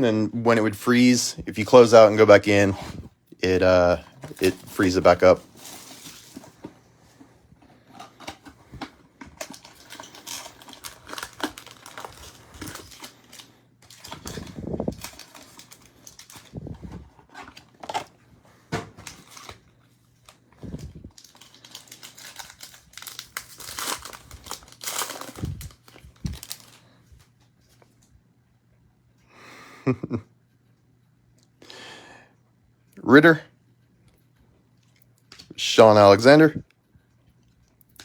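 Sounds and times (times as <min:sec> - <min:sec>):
foil wrappers tearing and crinkling: 0:04.3 - 0:06.6, 0:09.4 - 0:18.1, 0:19.0 - 0:26.9.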